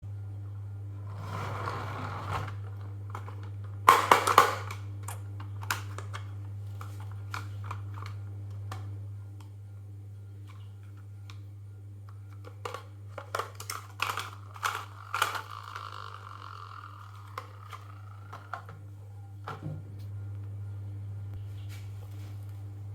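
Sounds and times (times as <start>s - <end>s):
steady low hum: 0.0s - 22.9s
steady rolling whir: 0.1s - 4.1s
toys clattering down marble run: 13.3s - 18.6s.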